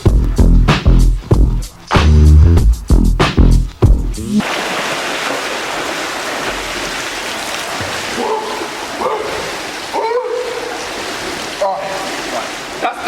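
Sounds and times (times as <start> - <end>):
rushing water noise: 4.4 - 13.0.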